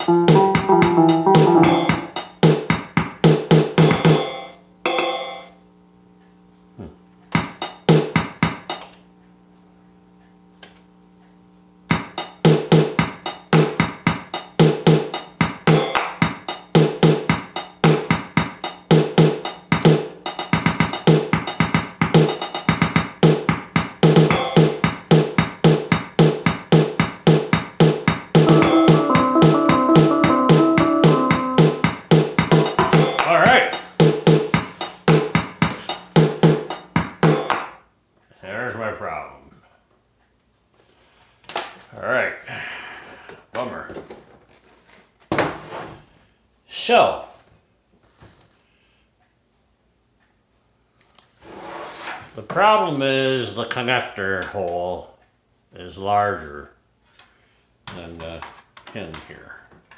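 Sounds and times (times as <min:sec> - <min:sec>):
keyboard drum-machine rhythm: 0:00.0 - 0:04.3, 0:11.9 - 0:37.6.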